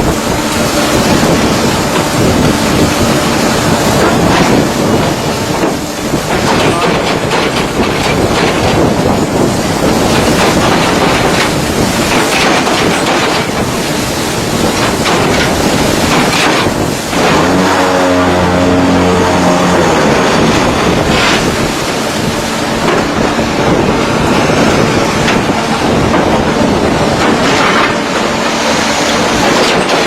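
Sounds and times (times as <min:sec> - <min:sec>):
motor hum: 0:00.0 - 0:30.0
block press machine clattering: 0:05.6 - 0:13.7, 0:29.3 - 0:30.0.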